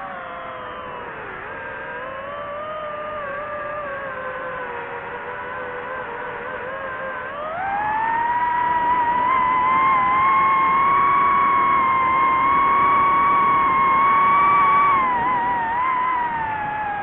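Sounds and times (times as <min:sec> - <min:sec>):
drone motors whining: 0:00.0 - 0:17.0.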